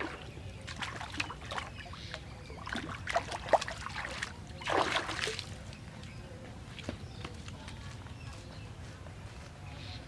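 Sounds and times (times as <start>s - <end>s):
water splashing and sloshing: 0.0s - 5.8s.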